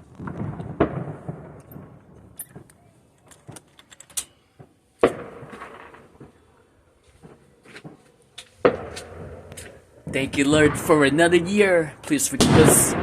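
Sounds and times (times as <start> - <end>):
firework bangs with echo: 0.0 - 2.7, 5.0 - 6.5, 8.6 - 13.0
fireworks popping and crackling: 0.0 - 3.7, 4.6 - 6.5, 7.2 - 13.0.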